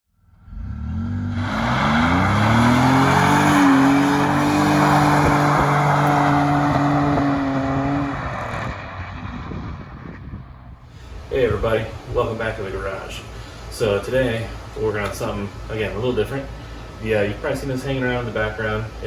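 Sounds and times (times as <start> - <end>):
car engine accelerating: 0.1 - 12.2.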